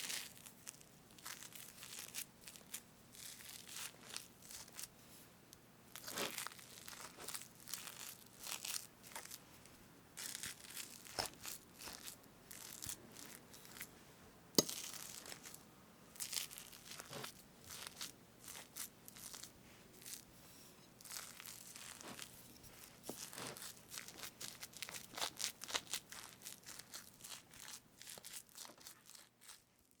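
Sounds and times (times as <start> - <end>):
utensil cutting whipped cream: 21.1 - 29.0.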